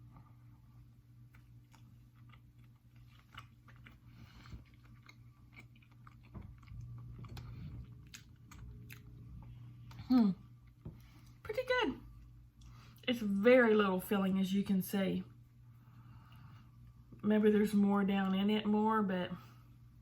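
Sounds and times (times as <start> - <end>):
low hum: 0.0 - 20.0
person chewing: 1.2 - 11.4.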